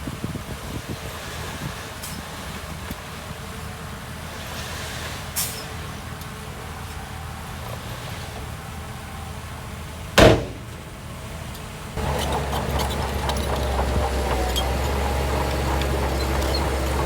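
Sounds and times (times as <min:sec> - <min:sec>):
close engine drone: 0:00.0 - 0:17.0
heavy machinery diesel engines: 0:00.0 - 0:17.0
metallic clatter: 0:12.0 - 0:17.0.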